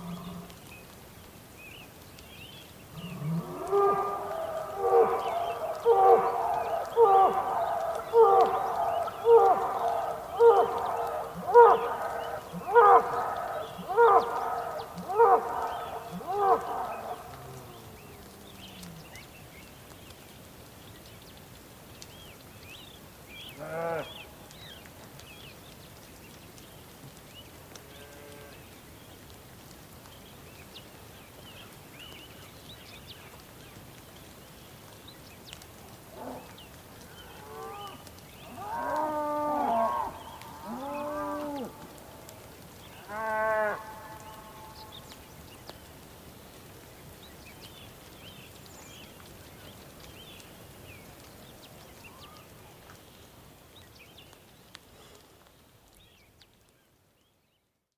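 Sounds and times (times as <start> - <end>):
cattle mooing: 38.5 - 41.8.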